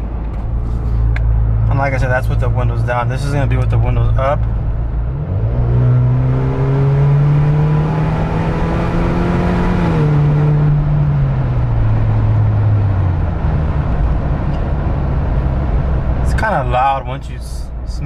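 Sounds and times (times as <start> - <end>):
car engine revving in cabin: 0.0 - 16.8.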